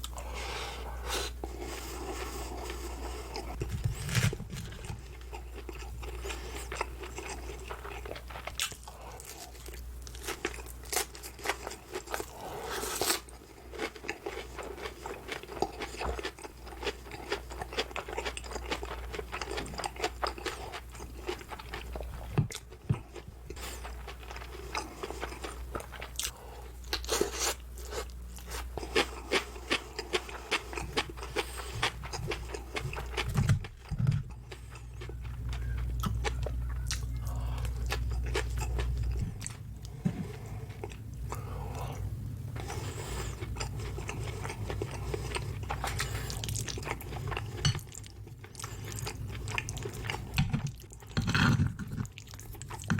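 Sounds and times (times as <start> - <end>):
steady low hum: 0.0 - 52.9
crunchy bites and chewing: 2.6 - 40.0.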